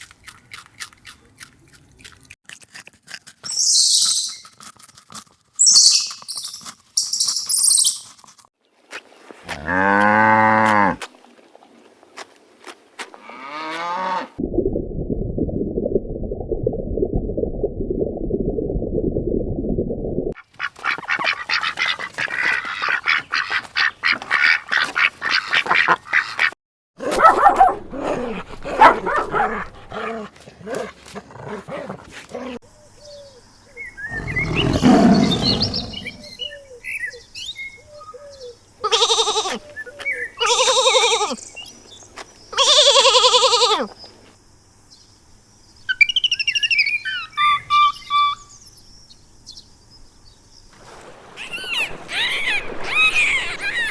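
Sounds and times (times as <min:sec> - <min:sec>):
bird chirps: 0:03.5 - 0:04.4, 0:05.6 - 0:08.1, 0:33.0 - 0:38.6, 0:45.8 - 0:49.7.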